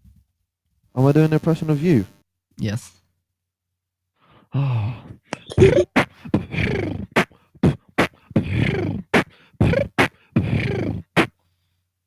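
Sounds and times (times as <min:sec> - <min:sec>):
vocal beatboxing: 0:05.2 - 0:11.4.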